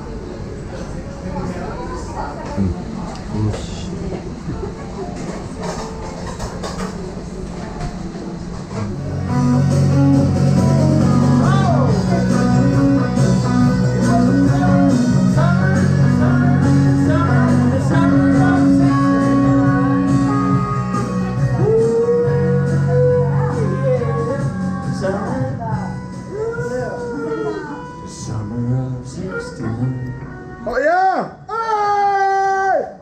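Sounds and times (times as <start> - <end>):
song with guitar bass and vocals: 9.2 - 26.7.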